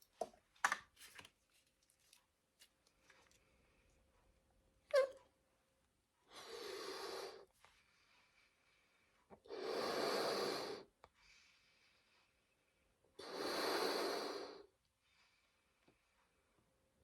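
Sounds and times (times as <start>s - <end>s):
faint hissing: 13.2s - 14.7s.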